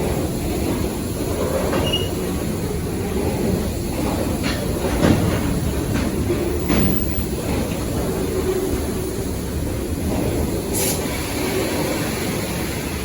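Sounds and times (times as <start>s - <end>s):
freight train wheels rumbling: 0.0s - 13.0s
sharp knocks of train wagons: 3.8s - 8.4s.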